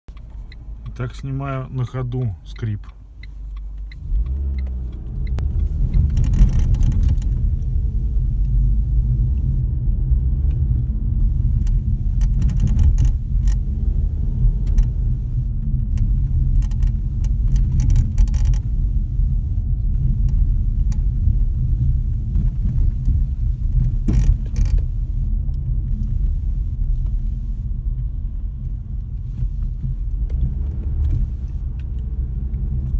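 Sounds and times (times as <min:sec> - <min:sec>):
car road and engine rumble: 0:00.0 - 0:32.9
squeaking creaks in car: 0:02.2 - 0:07.6, 0:11.3 - 0:18.8, 0:22.3 - 0:25.2.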